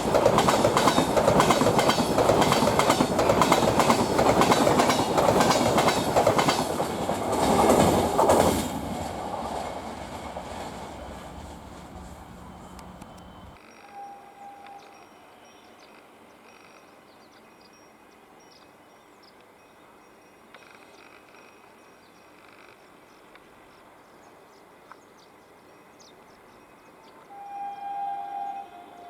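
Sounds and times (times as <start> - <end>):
train horn two-tone blast: 11.1 - 15.0, 27.3 - 29.0
faint bird chirps: 11.7 - 16.0.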